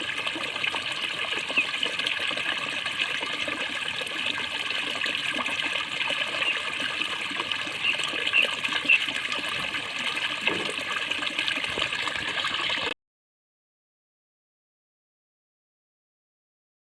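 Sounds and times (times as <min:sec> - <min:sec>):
water gurgling: 0:00.0 - 0:13.0
bubbling pops: 0:10.4 - 0:11.0.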